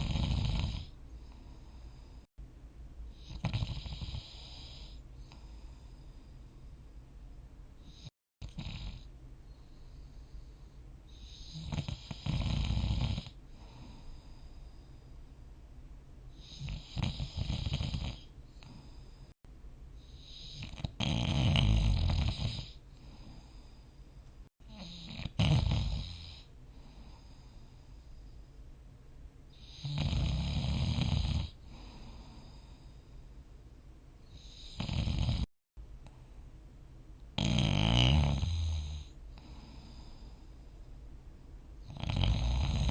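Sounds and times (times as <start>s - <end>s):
person snoring: 0.0s - 2.2s, 3.2s - 5.8s, 11.2s - 14.4s, 16.4s - 19.1s, 20.2s - 23.6s, 24.7s - 27.5s, 29.6s - 32.8s, 34.4s - 35.5s, 37.4s - 40.4s, 41.9s - 42.9s
quiet breathing: 0.0s - 2.4s, 3.0s - 8.1s, 8.9s - 15.6s, 16.2s - 21.0s, 22.2s - 30.0s, 31.4s - 36.5s, 38.3s - 42.9s.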